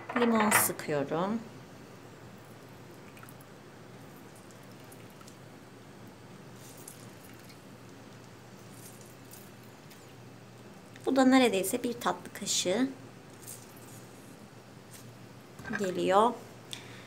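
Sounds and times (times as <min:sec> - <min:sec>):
steady low hiss: 0:00.0 - 0:17.0
juice dripping: 0:02.4 - 0:11.0.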